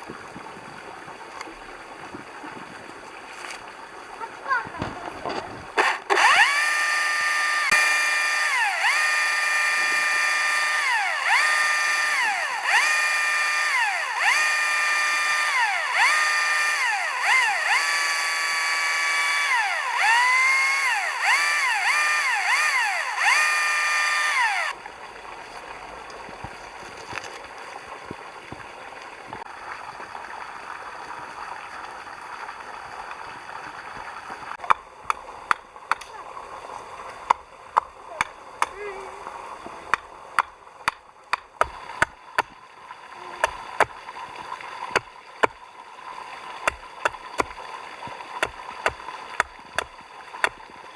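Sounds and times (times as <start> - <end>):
electric power drill whining: 5.8 - 24.8.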